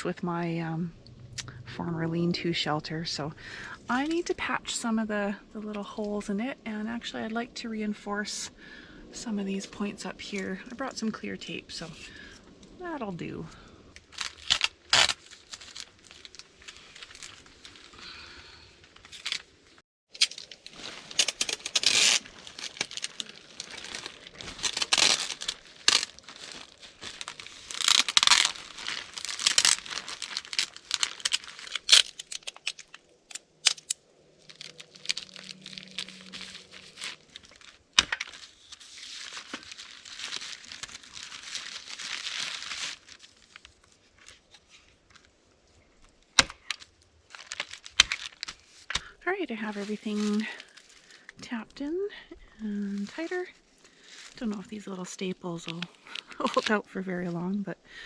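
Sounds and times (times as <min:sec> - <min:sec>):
plastic tarp crinkling: 0:13.6 - 0:45.3, 0:46.1 - 0:51.6, 0:52.6 - 0:57.1
tape pulled off roll: 0:20.2 - 0:39.6.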